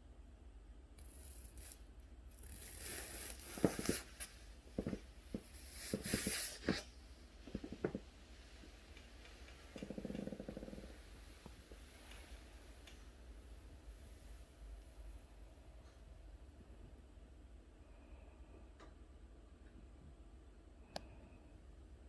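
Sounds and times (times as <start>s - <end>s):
dog snoring: 9.7s - 11.4s.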